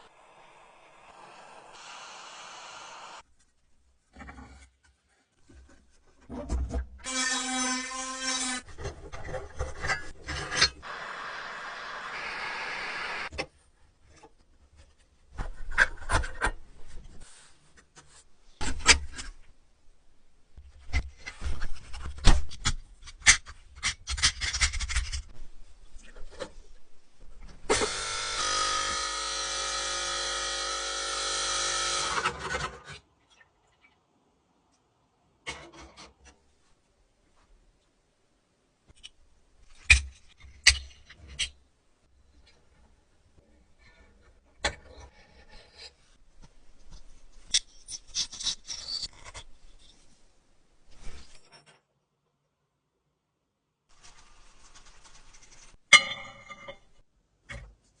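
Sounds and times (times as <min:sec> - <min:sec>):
small power tool running: 0:00.0 - 0:03.2, 0:27.8 - 0:32.2.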